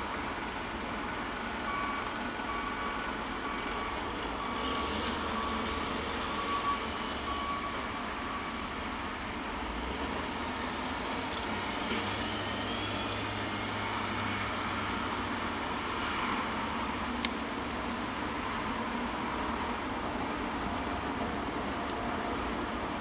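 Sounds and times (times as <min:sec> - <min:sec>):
reversing alarm beeping: 0:01.6 - 0:09.4.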